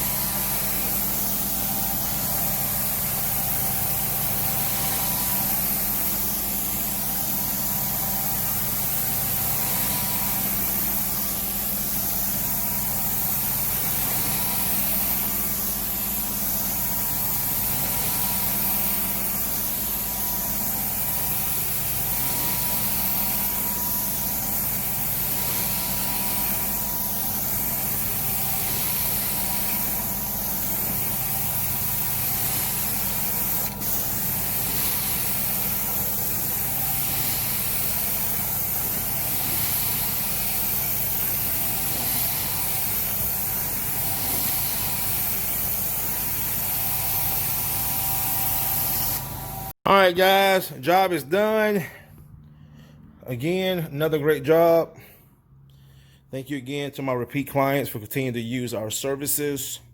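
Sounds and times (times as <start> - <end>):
carpet extraction machine running: 7.0 - 11.0, 13.7 - 48.5.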